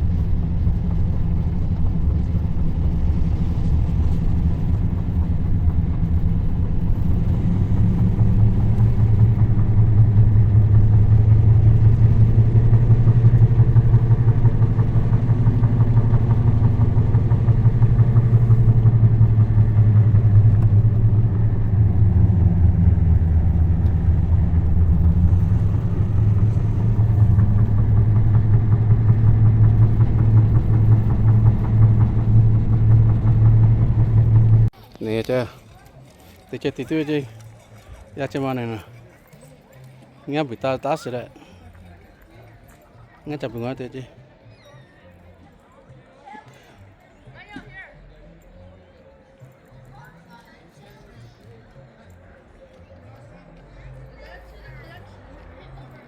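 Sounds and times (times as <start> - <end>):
engine running with low drone: 0.0 - 34.8, 51.8 - 56.0.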